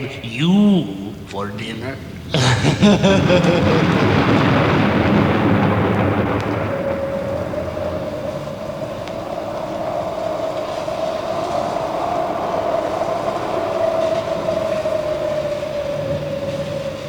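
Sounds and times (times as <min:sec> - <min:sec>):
low rumble: 0:00.7 - 0:11.3
eerie howling drone: 0:02.1 - 0:17.0.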